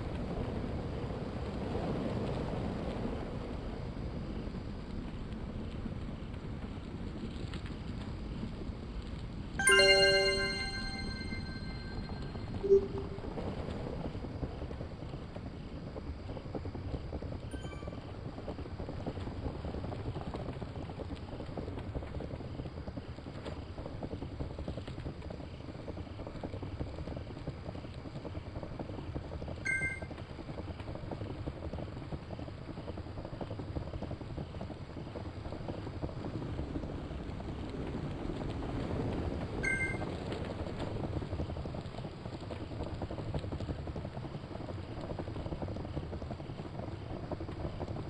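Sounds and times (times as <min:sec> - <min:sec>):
two-tone electronic beep: 0:09.6 - 0:13.4, 0:29.7 - 0:30.1.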